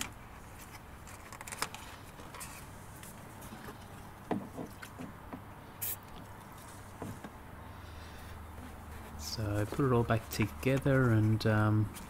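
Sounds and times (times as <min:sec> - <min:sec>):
brief high hiss: 0:05.8 - 0:06.0.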